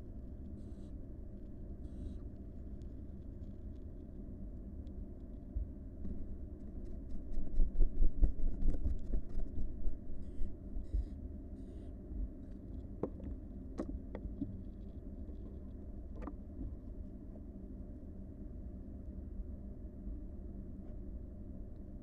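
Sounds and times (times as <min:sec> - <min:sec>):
low steady rumble: 0:00.0 - 0:22.0.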